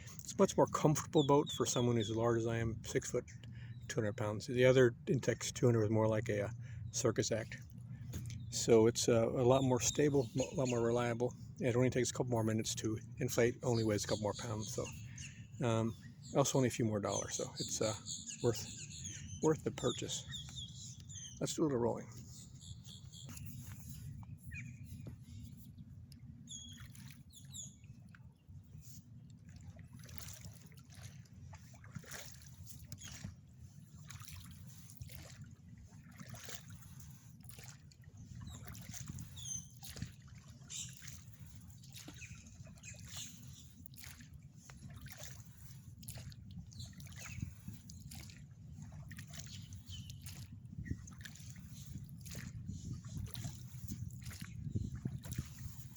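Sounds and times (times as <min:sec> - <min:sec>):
oars splashing in water: 0:07.3 - 0:55.9.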